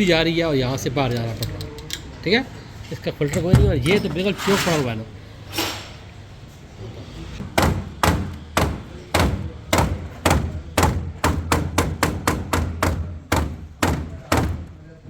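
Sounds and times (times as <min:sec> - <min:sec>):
sharp hard knocks: 0:07.4 - 0:14.8.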